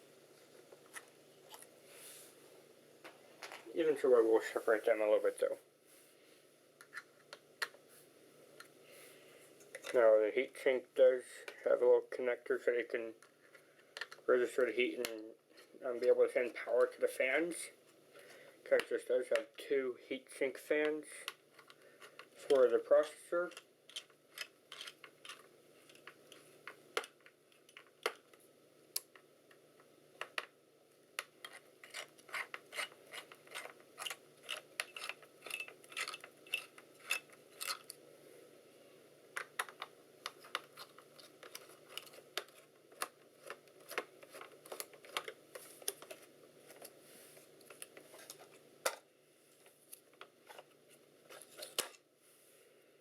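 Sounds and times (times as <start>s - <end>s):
screwdriver clicks and metal scrapes: 23.5s - 26.4s, 31.4s - 38.0s.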